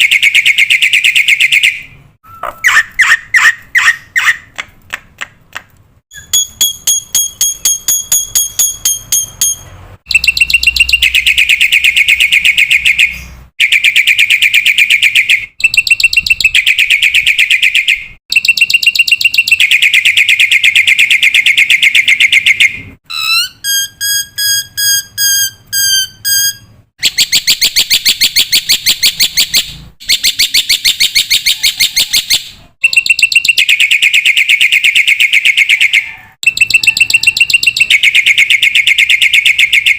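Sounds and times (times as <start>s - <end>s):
bird whistled notes: 0.2s - 4.4s, 6.1s - 7.0s, 22.2s - 33.7s.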